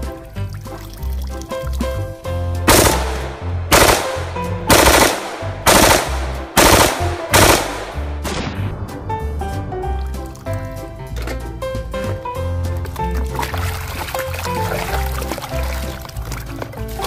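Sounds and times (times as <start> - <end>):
background music: 0.0 - 17.0
loud gunshots: 2.7 - 8.7.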